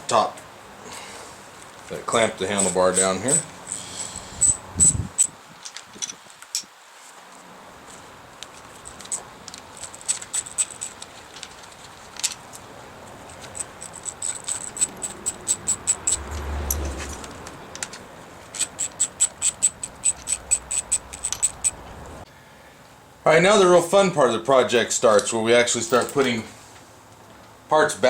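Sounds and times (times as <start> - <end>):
ratchet wrench clicking: 13.3 - 21.9.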